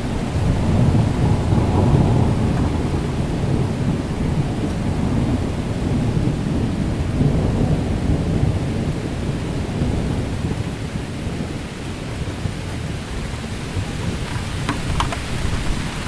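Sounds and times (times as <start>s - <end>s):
rolling thunder: 0.0s - 16.0s
steady rain: 0.0s - 16.0s.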